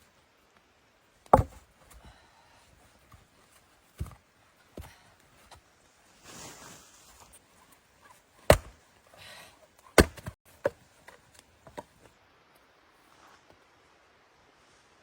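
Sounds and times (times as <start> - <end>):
soft rustling or scraping: 2.6 - 12.1, 13.0 - 13.6.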